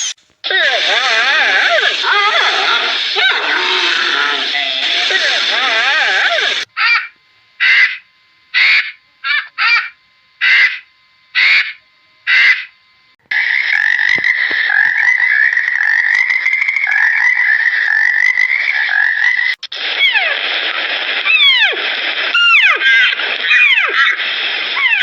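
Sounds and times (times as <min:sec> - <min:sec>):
animal calls: 0:00.5 - 0:08.0, 0:08.6 - 0:10.8, 0:13.3 - 0:20.4.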